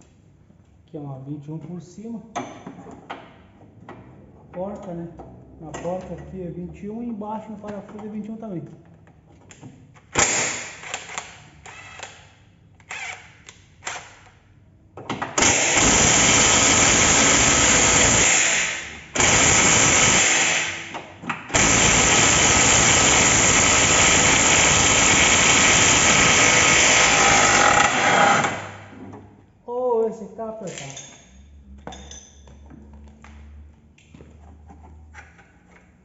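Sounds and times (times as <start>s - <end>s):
power tool running: 15.4s - 20.9s, 21.5s - 28.9s.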